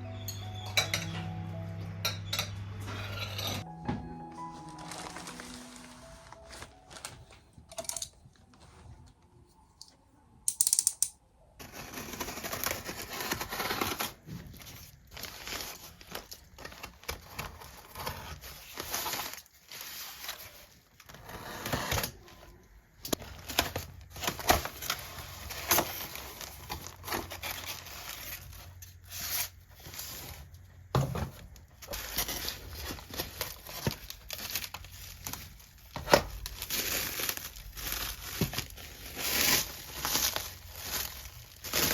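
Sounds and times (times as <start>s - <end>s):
crinkling and tearing: 4.5s - 7.7s, 11.6s - 21.2s, 31.6s - 41.9s.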